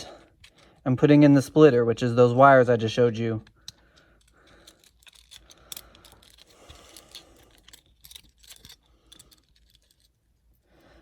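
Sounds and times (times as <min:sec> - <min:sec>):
plastic parts clicking and rattling: 0:00.3 - 0:00.8, 0:03.4 - 0:10.4.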